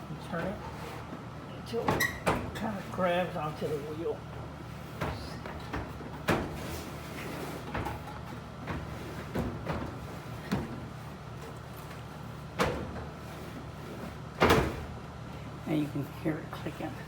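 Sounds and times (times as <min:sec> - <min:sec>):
dryer drum knocks and clicks: 0:07.7 - 0:10.8.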